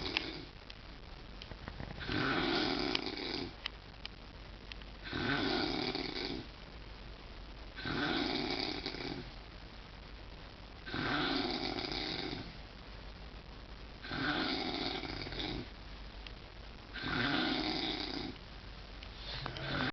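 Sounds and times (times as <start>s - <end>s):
loud rasping snoring: 2.0s - 3.5s, 5.0s - 6.5s, 7.8s - 9.3s, 10.9s - 12.5s, 14.0s - 15.7s, 17.0s - 18.4s, 19.4s - 19.9s
quiet breathing: 13.4s - 19.9s.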